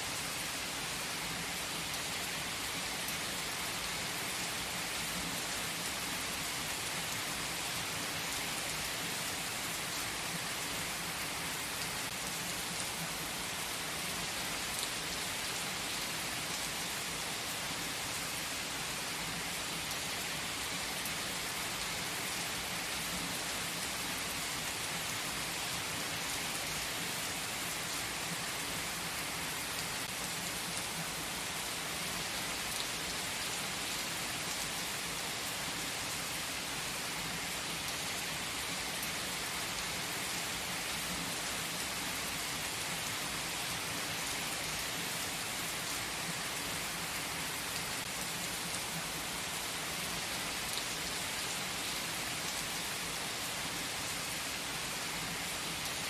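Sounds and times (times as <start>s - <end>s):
steady rain hiss: 0.0s - 56.0s.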